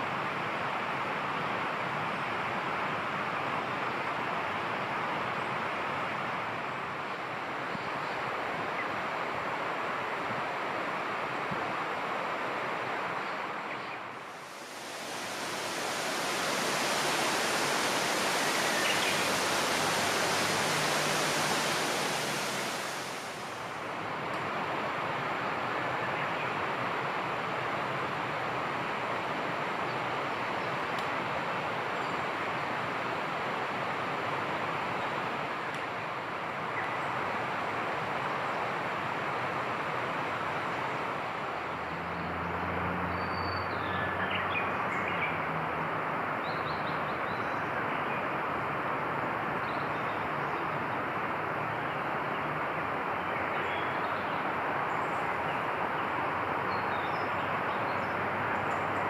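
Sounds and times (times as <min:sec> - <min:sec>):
steady rushing outdoor noise: 0:00.0 - 0:59.0
low hum: 0:14.3 - 0:23.8.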